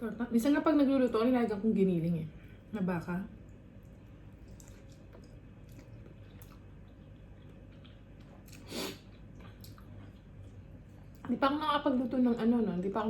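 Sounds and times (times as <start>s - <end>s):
chewing food: 3.4s - 11.4s.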